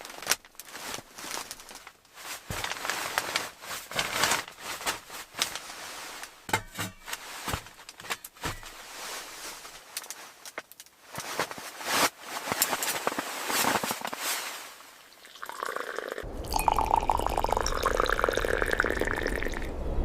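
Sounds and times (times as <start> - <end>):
water pouring and dripping: 15.1 - 19.8
low rumble: 16.2 - 20.0.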